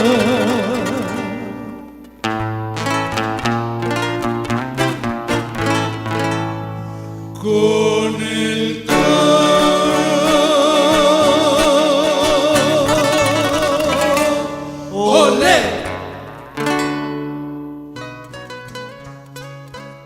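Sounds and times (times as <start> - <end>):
voices singing with vibrato: 0.0 - 2.1, 7.4 - 16.4
plucked guitars: 0.0 - 20.0.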